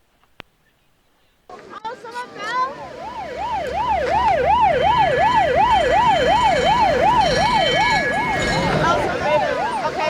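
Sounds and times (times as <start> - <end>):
electronic siren yelping: 2.8 - 10.0.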